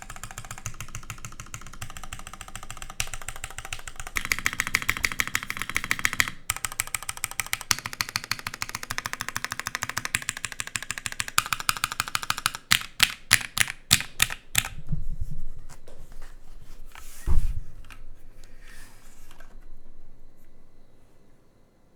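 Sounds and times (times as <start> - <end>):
mechanical keyboard typing: 0.0 - 14.8.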